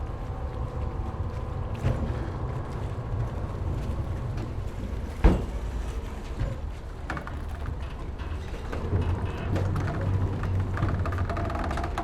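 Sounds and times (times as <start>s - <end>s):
ferry engines rumbling: 0.0s - 12.0s.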